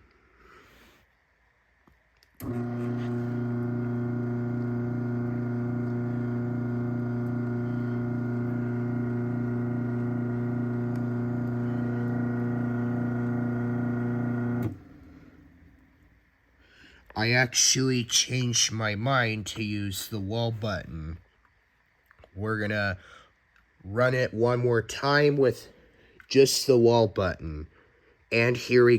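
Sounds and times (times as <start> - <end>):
garage door opener motor hum: 2.4 - 15.7.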